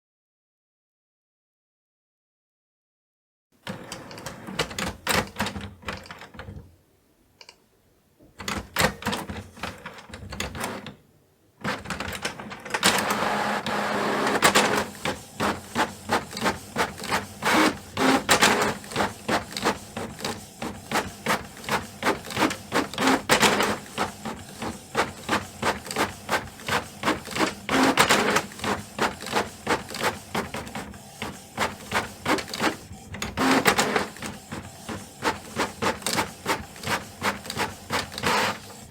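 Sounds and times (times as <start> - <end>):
printer clacking: 11.6 - 38.9
printer hum: 11.6 - 38.9.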